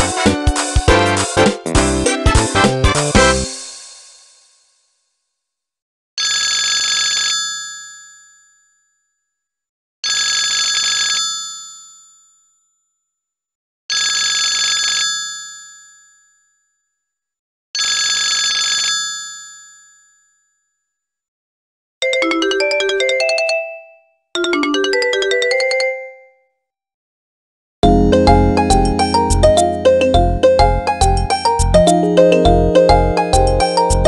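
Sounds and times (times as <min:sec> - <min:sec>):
mobile phone ringtone ringing: 0:22.0 - 0:26.4.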